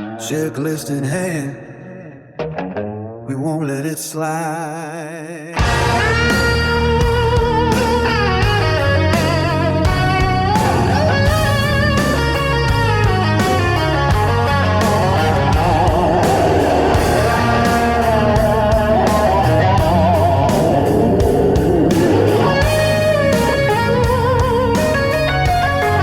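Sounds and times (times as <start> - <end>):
rock music with guitar solo: 1.9 - 3.3, 5.6 - 26.0.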